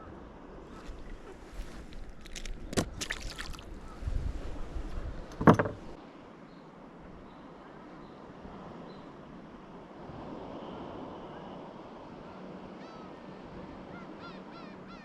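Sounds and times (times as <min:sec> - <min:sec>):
water noise: 0:00.0 - 0:06.0
faint wind: 0:00.0 - 0:15.0
gear knocking on a boat: 0:05.3 - 0:06.0
thump: 0:05.4 - 0:05.8.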